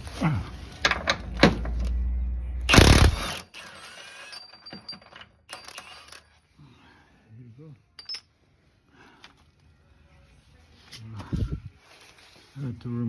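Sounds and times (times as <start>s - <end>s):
low hum: 0.3s - 3.4s
loud rattling burst: 2.7s - 3.4s
metal tools clicking and knocking: 4.2s - 6.3s.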